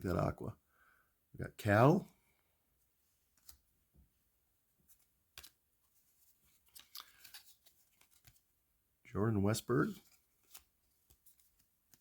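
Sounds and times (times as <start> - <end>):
trading cards clicking and rustling: 4.9 - 5.6, 6.4 - 8.4, 9.8 - 12.0.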